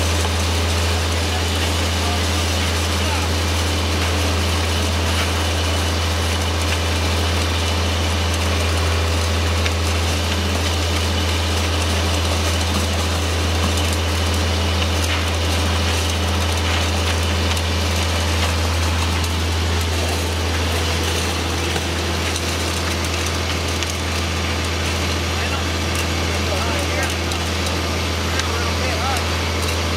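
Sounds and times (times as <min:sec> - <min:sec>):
heavy diesel engine humming: 0:00.0 - 0:29.9.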